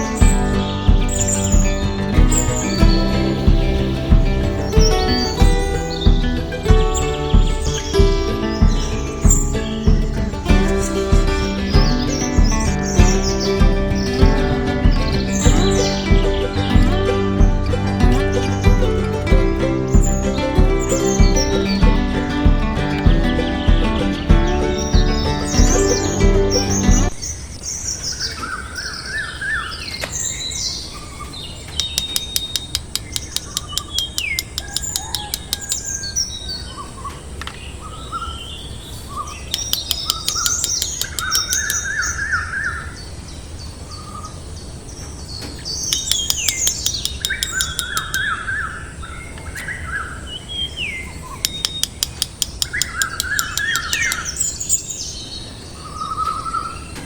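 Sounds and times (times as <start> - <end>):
songbirds chirping and singing: 0.0 - 57.0
rapid clicking: 31.8 - 35.8, 39.5 - 41.8, 45.9 - 48.2, 51.4 - 54.3.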